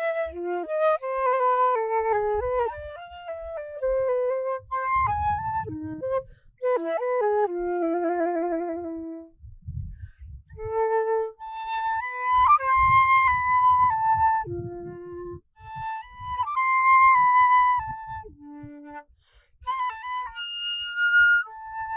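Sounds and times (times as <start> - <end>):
flute-like melody: 0.0 - 9.4, 10.5 - 21.9.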